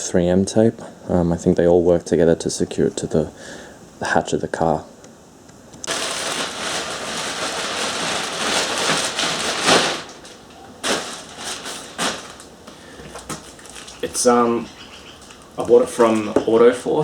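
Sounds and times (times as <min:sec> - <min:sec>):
short sharp crackles: 0:05.8 - 0:12.6
dense crackling rustling: 0:05.8 - 0:17.0.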